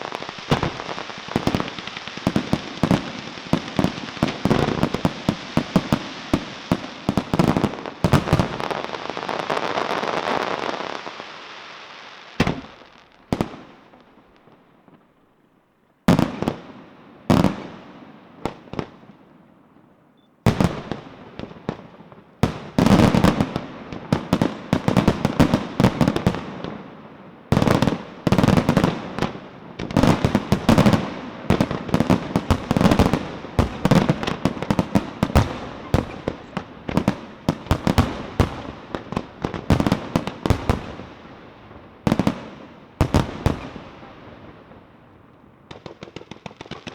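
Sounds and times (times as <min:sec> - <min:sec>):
fireworks bursting: 0:00.0 - 0:15.0, 0:20.4 - 0:46.9
fireworks crackling: 0:00.0 - 0:15.0, 0:20.5 - 0:46.9.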